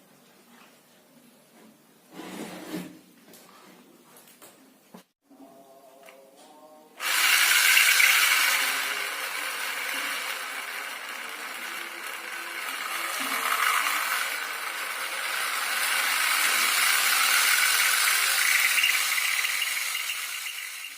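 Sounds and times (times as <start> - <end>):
geared motor rattling: 7.0 - 20.9.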